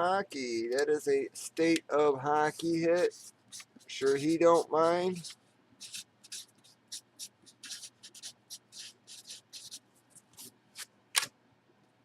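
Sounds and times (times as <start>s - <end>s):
hands rustling and scraping: 2.3s - 6.6s.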